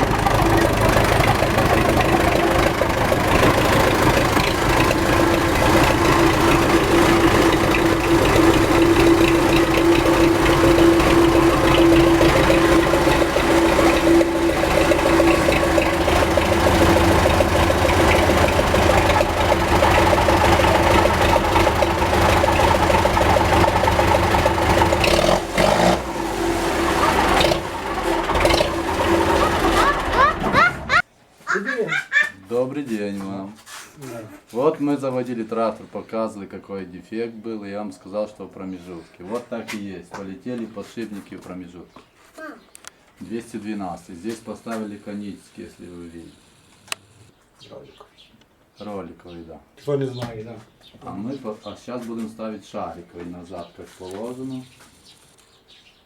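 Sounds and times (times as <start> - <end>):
gearbox hum: 0.0 - 31.0
tractor diesel engine running: 0.0 - 31.0.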